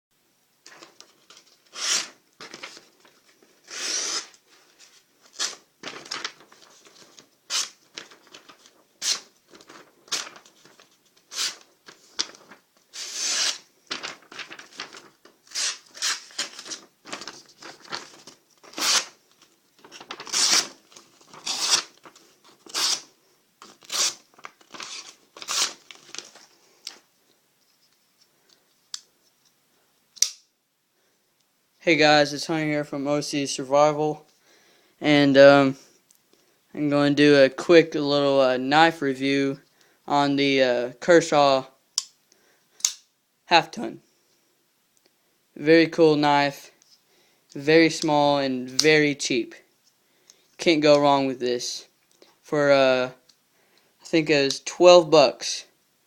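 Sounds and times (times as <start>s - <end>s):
cutting or tearing strokes: 13.0s - 13.6s, 18.7s - 19.2s, 21.4s - 21.9s, 22.7s - 23.1s.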